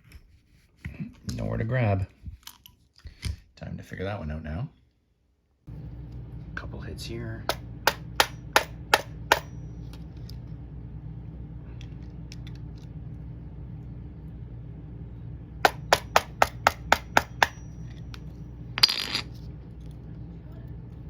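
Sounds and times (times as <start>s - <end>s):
hammer hitting metal padlock: 7.5s - 9.6s, 15.7s - 17.9s.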